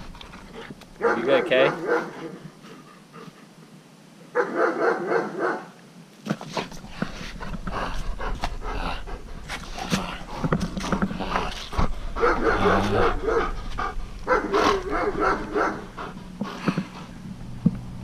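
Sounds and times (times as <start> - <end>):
puppy panting: 0.4 - 3.6, 6.6 - 17.2.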